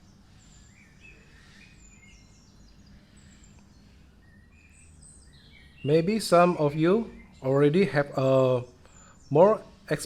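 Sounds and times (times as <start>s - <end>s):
faint birdsong whistles: 0.0s - 10.0s.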